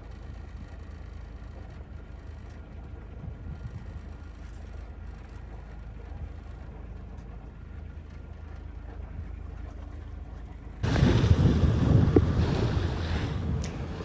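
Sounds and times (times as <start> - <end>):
boat engine droning: 0.0 - 14.0
rushing wind and water: 10.8 - 14.0.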